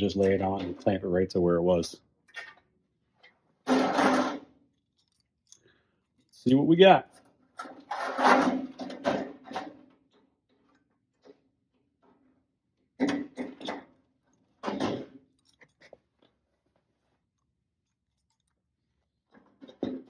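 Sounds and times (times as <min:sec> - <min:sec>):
sheet metal rattling and scraping: 0:03.6 - 0:04.5, 0:07.6 - 0:10.1.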